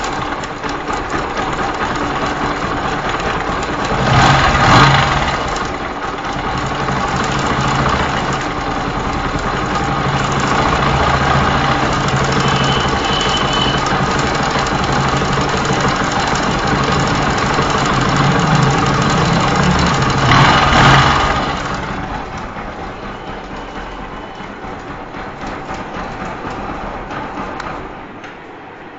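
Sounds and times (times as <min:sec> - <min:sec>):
motorcycle engine idling roughly: 0:00.0 - 0:28.2
engine revving: 0:03.8 - 0:24.0.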